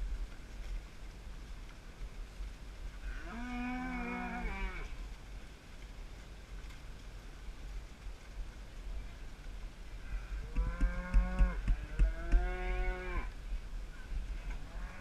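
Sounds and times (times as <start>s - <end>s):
steady low rumble: 4.0s - 15.0s
cow mooing: 10.6s - 13.3s.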